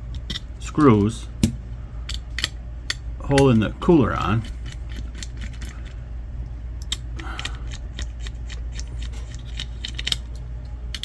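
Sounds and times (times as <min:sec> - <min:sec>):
low hum: 0:00.0 - 0:11.0
small parts clicking: 0:02.1 - 0:06.0, 0:06.8 - 0:11.0.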